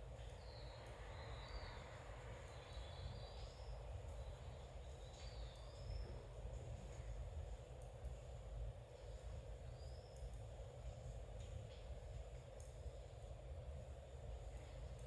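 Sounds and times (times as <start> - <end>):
faint steady rain: 0.0 - 15.0
faint ticks: 9.2 - 10.5.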